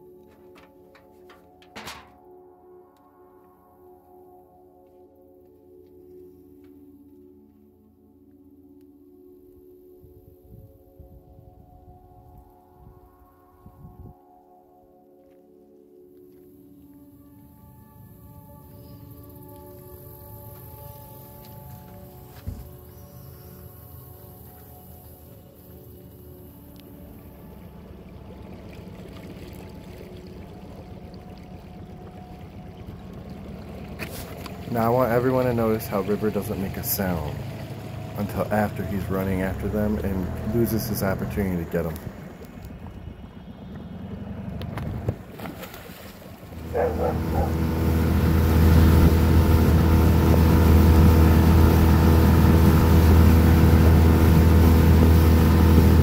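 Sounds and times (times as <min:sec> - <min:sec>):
boat motor running: 0:00.0 - 0:02.2, 0:16.8 - 0:56.0
water noise: 0:16.2 - 0:56.0.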